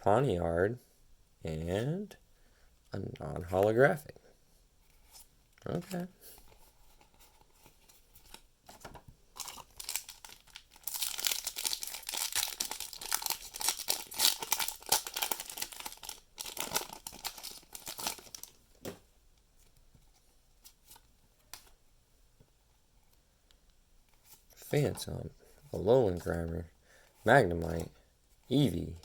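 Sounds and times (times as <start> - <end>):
foil wrapper tearing and crinkling: 9.4 - 18.6.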